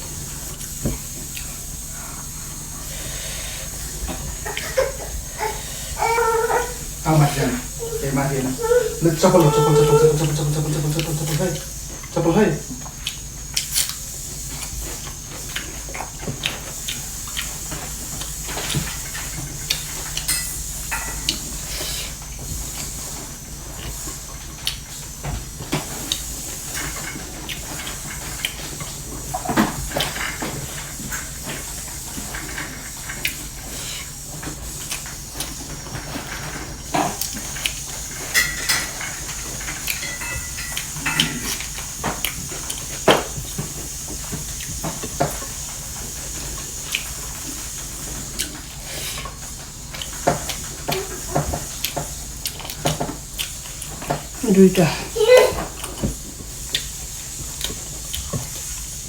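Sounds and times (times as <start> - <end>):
steady hiss: 0.0 - 59.0
person chewing and smacking: 9.1 - 20.3, 23.7 - 24.9, 27.2 - 32.4, 33.2 - 38.3, 39.4 - 54.4, 55.8 - 59.0.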